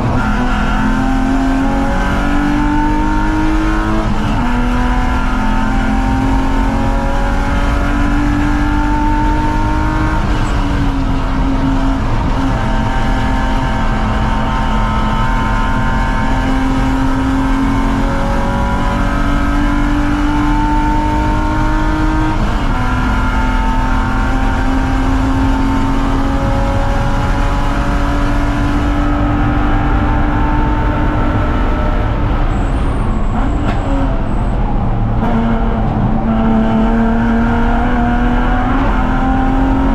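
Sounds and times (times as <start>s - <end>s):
car engine revving under full load: 0.0s - 39.9s.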